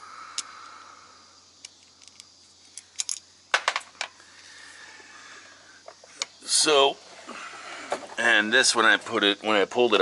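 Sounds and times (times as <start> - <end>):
metal parts and tools clicking: 1.6 - 4.1.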